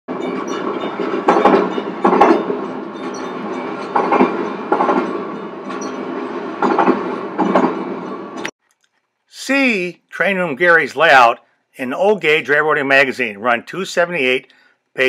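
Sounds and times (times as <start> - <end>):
wheels clickety-clack on rail joints: 0.1 - 8.5.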